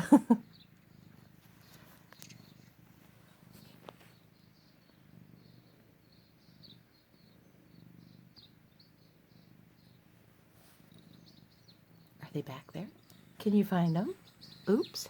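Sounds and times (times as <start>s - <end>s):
cat purring: 0.0s - 15.0s
small clicks: 1.7s - 2.7s.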